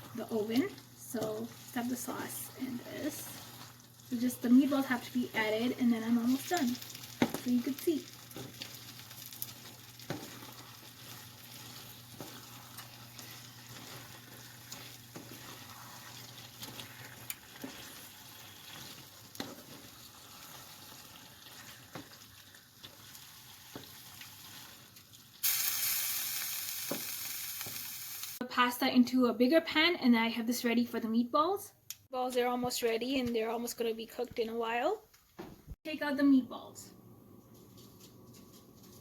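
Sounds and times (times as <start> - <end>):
food sizzling in a pan: 0.0 - 28.4.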